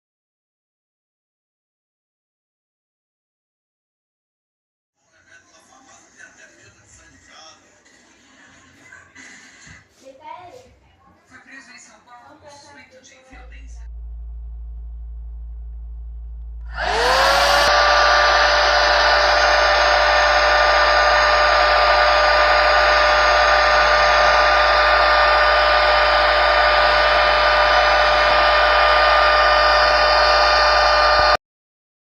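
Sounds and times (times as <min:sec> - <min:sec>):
hot-air brush motor whine: 0:16.4 - 0:31.4.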